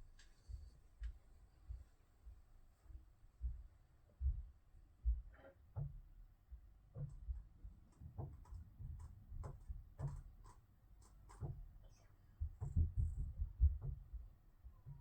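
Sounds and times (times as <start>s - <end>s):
thuds and footfalls through ceiling: 11.3s - 15.0s.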